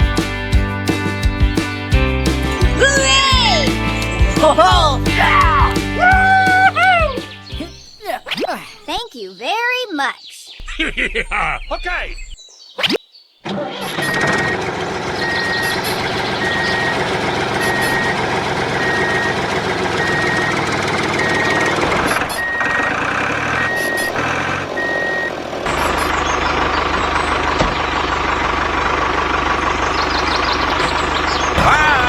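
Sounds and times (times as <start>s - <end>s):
vehicle engine running: 0.0s - 8.0s, 10.6s - 12.4s, 13.5s - 32.0s
reversing alarm beeps: 14.0s - 14.6s, 15.2s - 19.4s, 20.0s - 24.2s, 24.8s - 25.9s.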